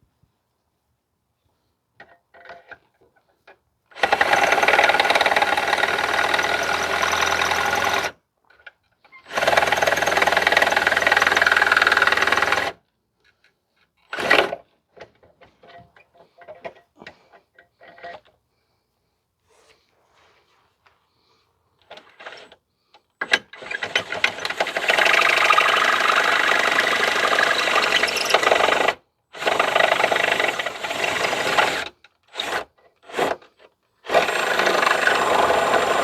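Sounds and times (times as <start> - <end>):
electric drill boring metal: 4.0 - 8.2, 9.3 - 12.8, 23.2 - 33.4, 34.1 - 36.0.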